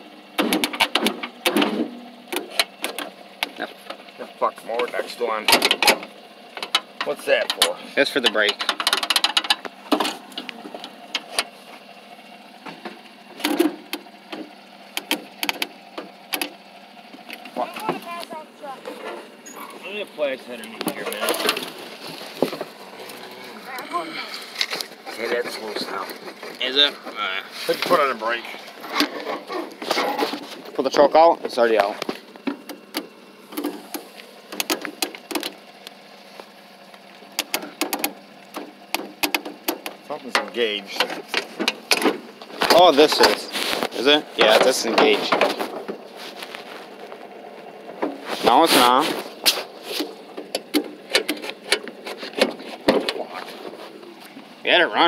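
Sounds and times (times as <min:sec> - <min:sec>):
mower controls clicking: 0:32.4 - 0:36.0, 0:37.3 - 0:45.5.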